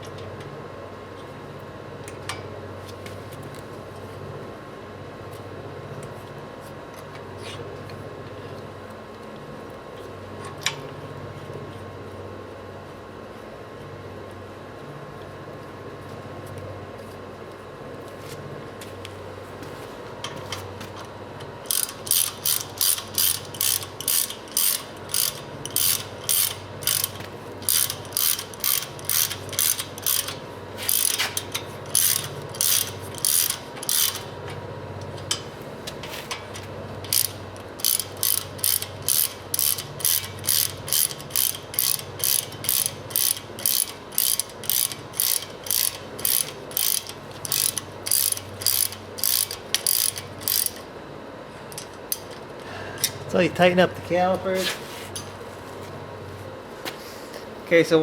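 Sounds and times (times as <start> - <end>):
hand ratchet clicking: 21.6 - 34.3, 35.0 - 50.9, 51.7 - 53.2.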